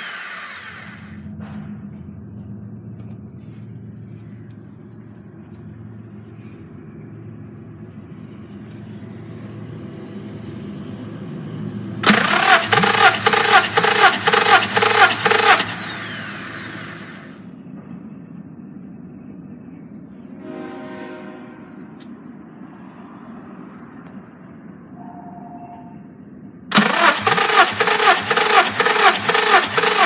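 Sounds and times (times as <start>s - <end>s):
engine starter cranking: 0.0s - 1.2s, 12.0s - 17.4s, 26.7s - 30.0s.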